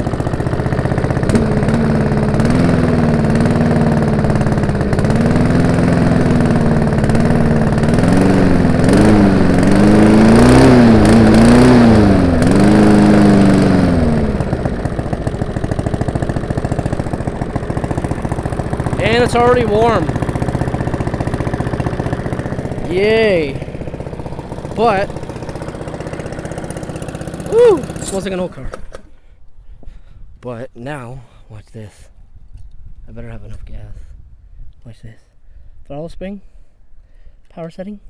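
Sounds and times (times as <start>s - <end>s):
lawnmower engine running: 0.0s - 29.3s.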